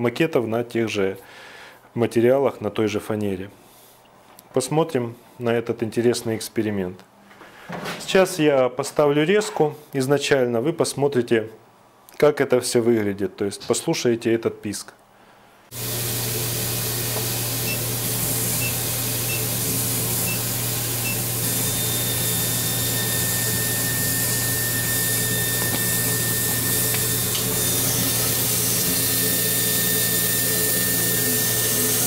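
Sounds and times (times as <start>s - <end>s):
laser cutter hissing and humming: 15.8s - 32.0s
high-pitched whistle: 20.2s - 27.0s.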